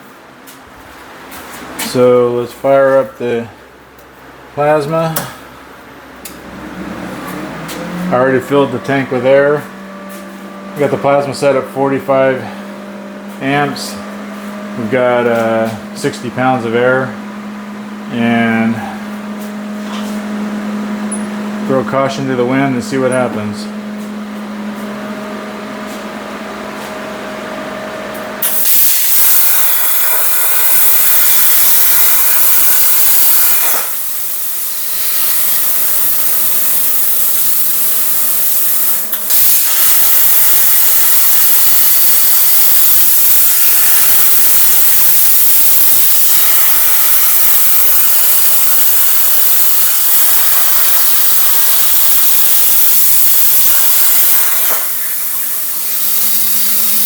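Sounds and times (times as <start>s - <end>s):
plasma cutter hissing: 28.4s - 57.0s.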